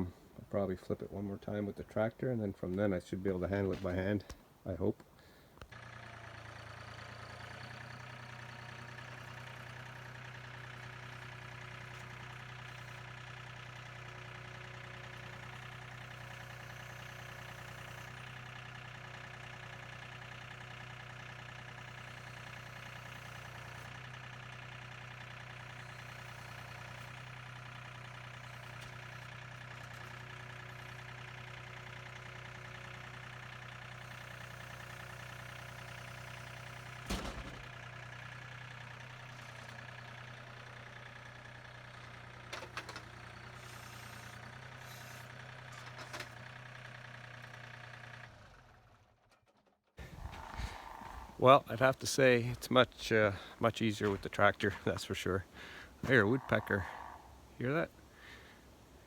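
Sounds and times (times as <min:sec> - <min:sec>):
tractor engine humming steadily: 0:00.0 - 0:59.0.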